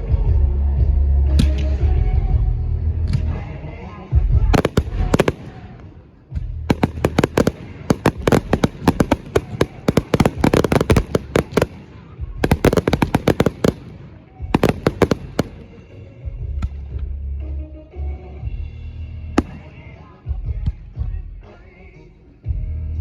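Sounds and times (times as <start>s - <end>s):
fireworks bangs and crackles: 4.2s - 16.6s, 19.4s - 20.1s.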